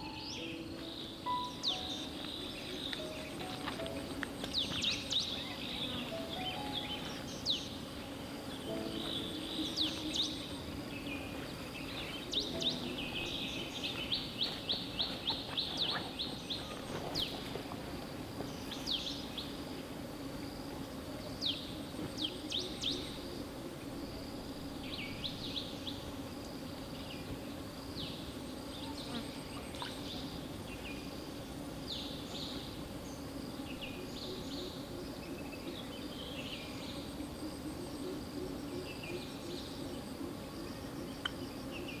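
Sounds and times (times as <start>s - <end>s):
faint insect ticking: 0.0s - 36.2s, 39.2s - 42.0s
songbirds chirping and trilling: 0.0s - 42.0s.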